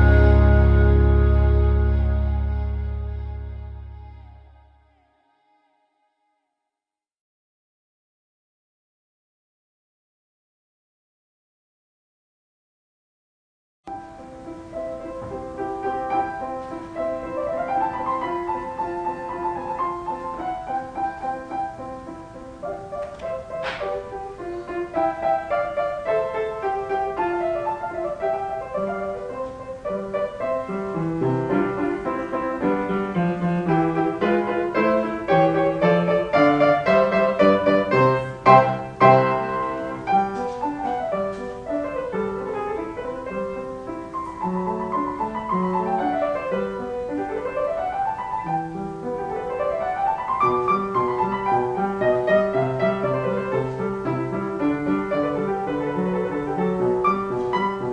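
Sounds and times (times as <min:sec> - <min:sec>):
classical solo piano: 0:13.9 - 0:57.9.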